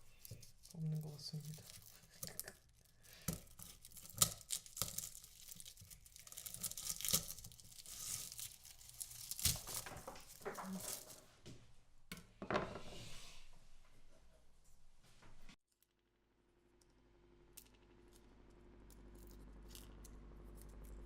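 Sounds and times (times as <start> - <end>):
garlic skins crackling and tearing: 0.0 - 11.2.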